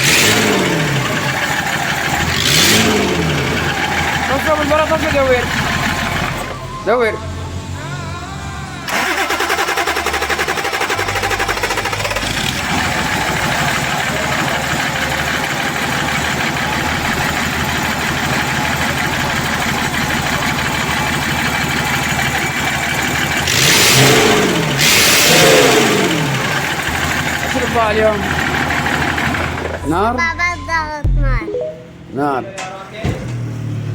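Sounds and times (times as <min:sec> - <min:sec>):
car engine cranking: 0:00.0 - 0:08.1, 0:08.8 - 0:31.4
car engine idling: 0:00.0 - 0:32.4.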